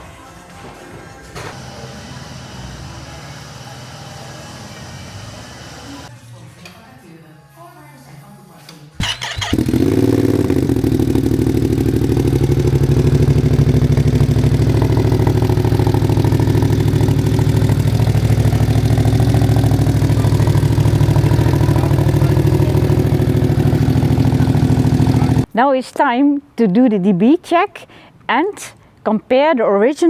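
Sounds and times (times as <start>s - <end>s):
motorcycle engine idling: 1.1s - 6.1s, 9.0s - 25.5s.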